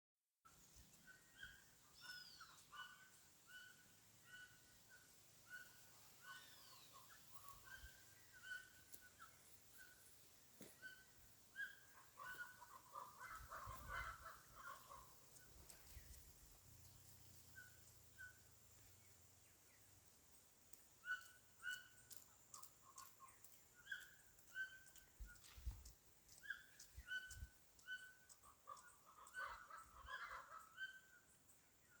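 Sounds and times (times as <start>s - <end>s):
birds singing: 1.0s - 20.0s, 21.0s - 32.0s
bird chatter: 5.5s - 19.6s, 21.0s - 31.4s.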